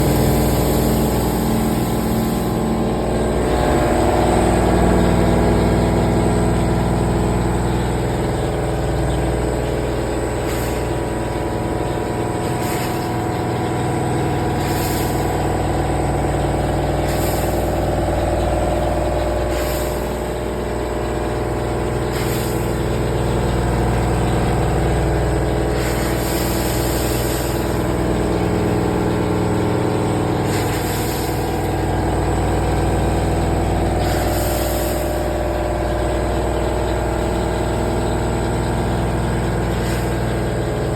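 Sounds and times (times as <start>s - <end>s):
milling machine hum: 0.0s - 40.9s
short hissing bursts: 14.6s - 15.3s, 17.1s - 17.7s, 19.5s - 20.1s, 25.8s - 27.7s, 30.5s - 31.6s, 34.0s - 35.4s.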